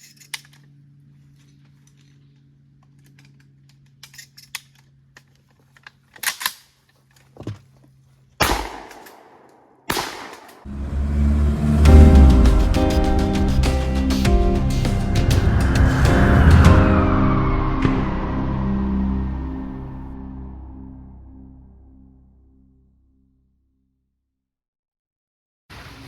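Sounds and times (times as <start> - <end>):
gunshots with echo: 8.4 - 10.7
music: 10.7 - 22.7.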